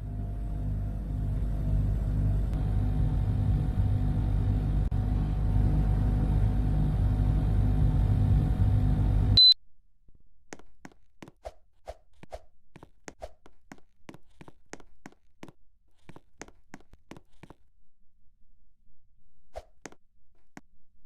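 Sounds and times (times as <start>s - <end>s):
air conditioner humming: 0.0s - 9.5s
short high beep: 9.4s - 9.6s.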